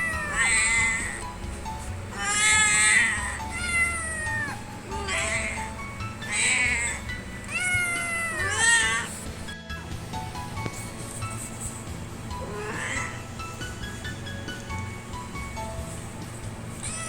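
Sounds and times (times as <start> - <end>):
kitten meowing: 0.0 - 1.3, 2.1 - 9.2, 12.4 - 13.2, 16.8 - 17.0.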